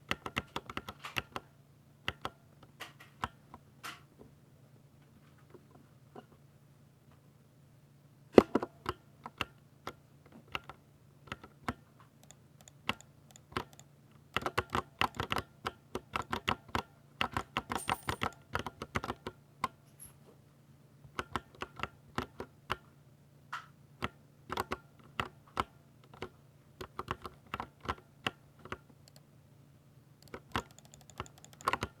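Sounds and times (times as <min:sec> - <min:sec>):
mechanical keyboard typing: 0:00.1 - 0:01.4, 0:10.5 - 0:19.4, 0:24.0 - 0:29.2, 0:30.2 - 0:32.0.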